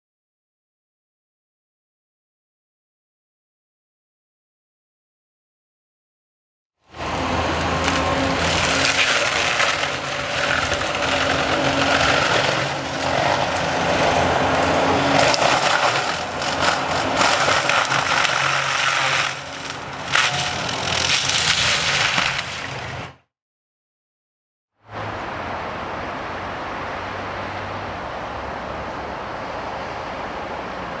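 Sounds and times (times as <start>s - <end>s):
diesel engine under load: 6.9s - 23.2s, 24.9s - 31.0s
mulcher grinding wood: 6.9s - 23.2s.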